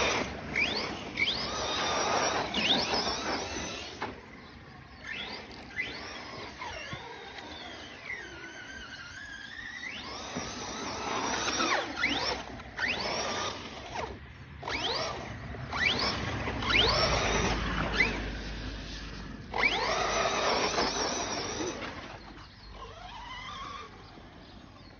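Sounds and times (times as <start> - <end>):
rc car motor whining: 0.0 - 24.9
tyres scrubbing in a skid: 0.0 - 24.9.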